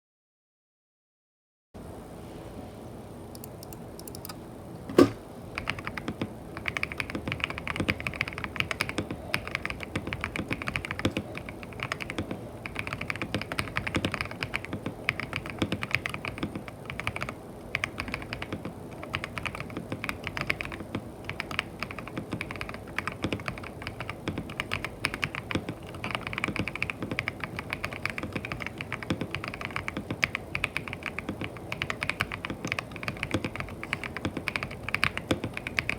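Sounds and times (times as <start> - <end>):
mechanical keyboard typing: 3.4 - 4.4, 5.0 - 35.9
sharp knock: 4.9 - 5.2.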